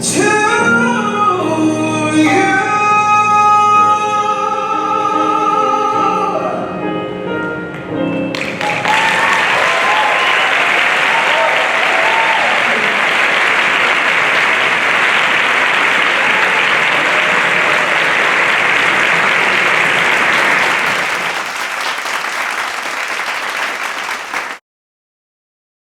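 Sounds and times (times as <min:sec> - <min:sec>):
audience applauding: 0:08.3 - 0:24.6.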